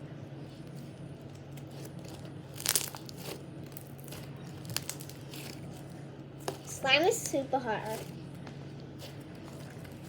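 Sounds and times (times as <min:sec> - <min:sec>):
slime being squished: 0:01.4 - 0:06.7.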